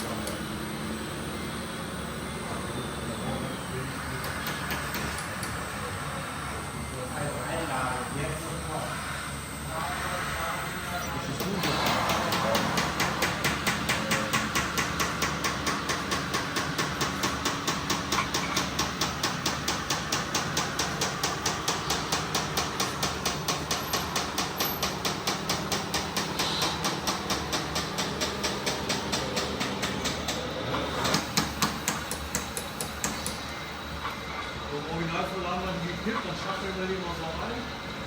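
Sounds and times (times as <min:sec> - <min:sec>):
rapid mechanical hammering: 0:04.2 - 0:05.6, 0:11.3 - 0:33.5.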